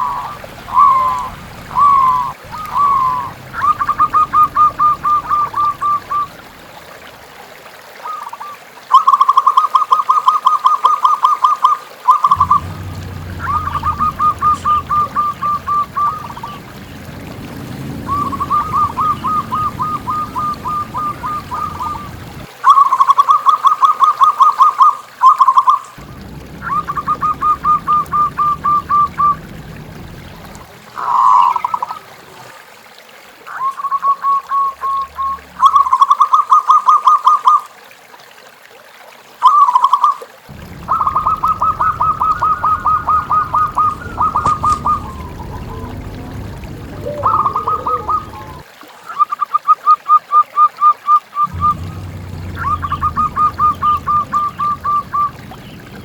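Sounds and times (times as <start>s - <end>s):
doves cooing: 0.0s - 7.2s, 12.3s - 22.5s, 26.0s - 32.1s, 40.5s - 48.6s, 51.4s - 56.0s.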